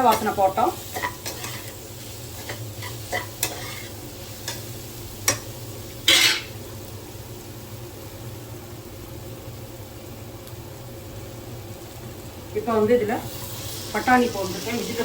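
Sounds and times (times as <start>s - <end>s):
onions sizzling in hot oil: 0.0s - 15.0s
spoon scraping and tapping pan: 2.4s - 4.6s.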